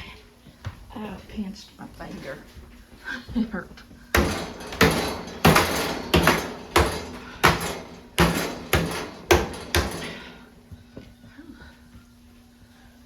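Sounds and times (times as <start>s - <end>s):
metal stovepipe knocks ringing: 4.2s - 10.5s.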